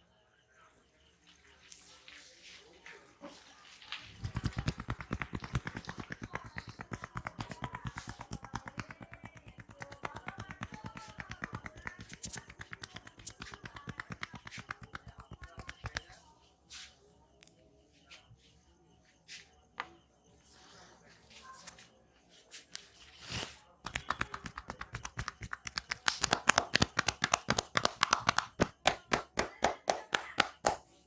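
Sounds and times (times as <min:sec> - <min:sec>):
hands slapping in massage: 0:04.1 - 0:16.2, 0:23.9 - 0:31.0.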